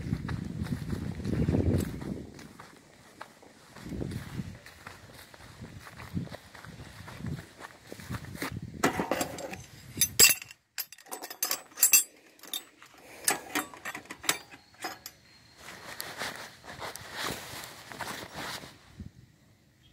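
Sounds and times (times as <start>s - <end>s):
hard objects clinking and knocking: 8.8s - 15.2s.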